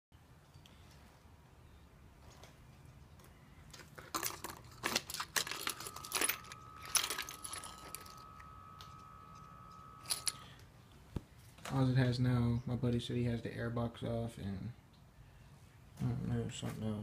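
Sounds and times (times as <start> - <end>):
keys jangling: 4.0 - 10.4.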